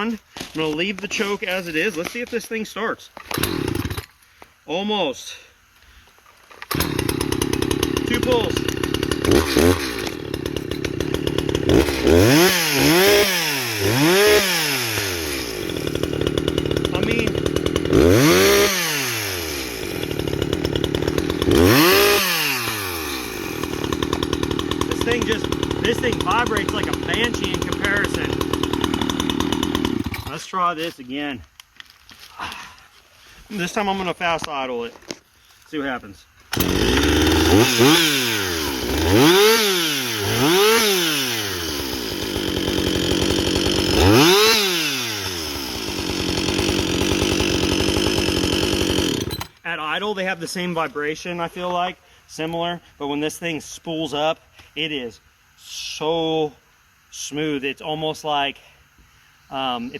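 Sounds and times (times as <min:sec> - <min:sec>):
chainsaw idling and revving: 0:03.2 - 0:04.1, 0:06.6 - 0:30.5, 0:36.5 - 0:49.6.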